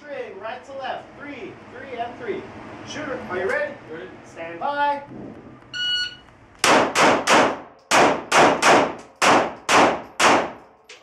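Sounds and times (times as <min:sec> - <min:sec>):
pistol shots with echo: 0:06.6 - 0:10.6.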